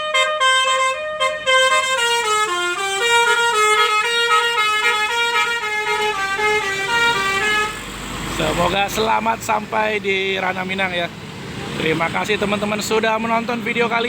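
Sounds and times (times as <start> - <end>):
bus horn playing a tune: 0.0 - 8.0.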